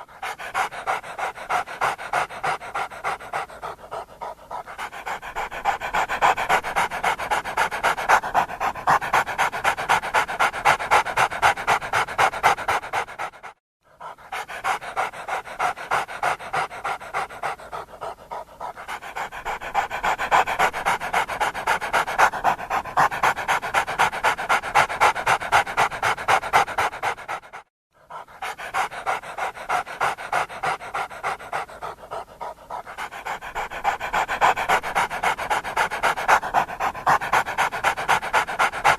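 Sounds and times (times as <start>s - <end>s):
dog panting fast: 0.0s - 38.9s.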